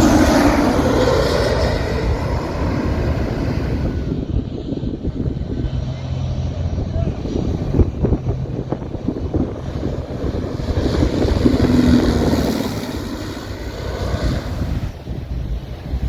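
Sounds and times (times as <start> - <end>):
surf rushing on beach: 0.0 - 4.1
wind buffeting microphone: 0.0 - 16.0.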